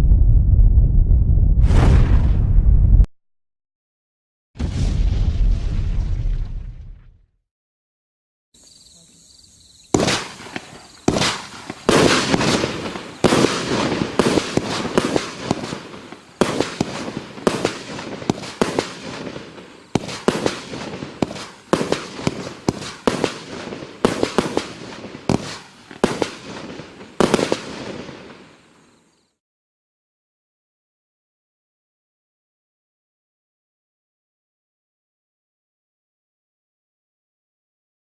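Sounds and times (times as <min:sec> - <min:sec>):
firework bangs: 0:09.9 - 0:28.6
firework fuse hiss: 0:09.9 - 0:28.8.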